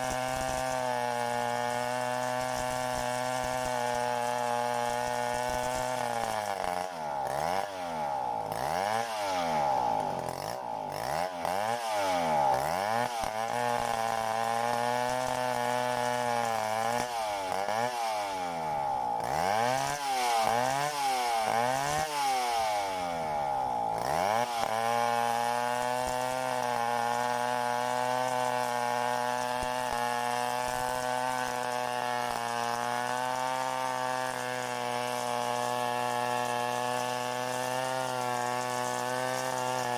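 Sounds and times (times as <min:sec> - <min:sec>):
chainsaw running: 0:00.0 - 0:39.9.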